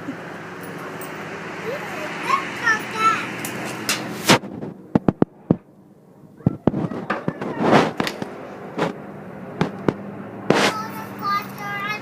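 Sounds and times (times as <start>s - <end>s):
noisy burst: 1.3s - 5.8s, 6.4s - 11.0s
sharp pops: 9.6s - 10.9s.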